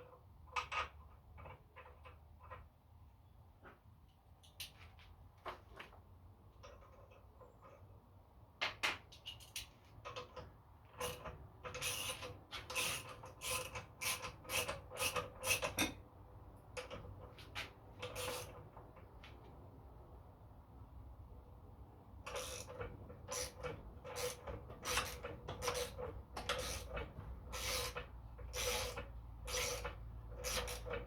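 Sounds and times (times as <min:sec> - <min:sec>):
metal scrapes and clicks: 0:11.0 - 0:16.0, 0:16.8 - 0:18.6, 0:22.3 - 0:31.0.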